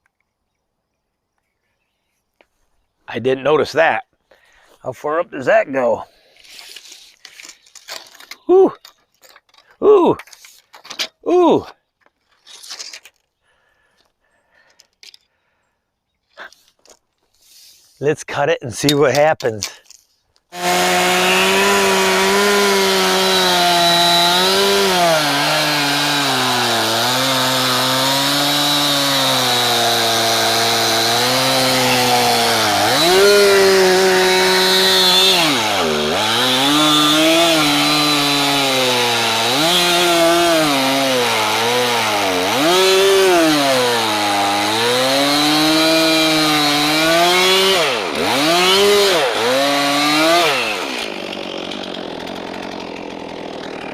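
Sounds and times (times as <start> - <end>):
chainsaw cutting log: 20.5 - 53.9.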